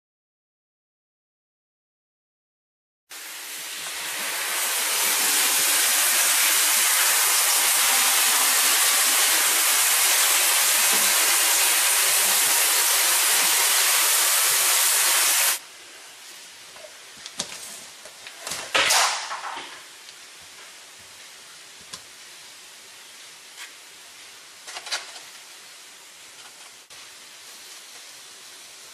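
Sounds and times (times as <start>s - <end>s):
hair dryer blowing: 3.2s - 15.6s.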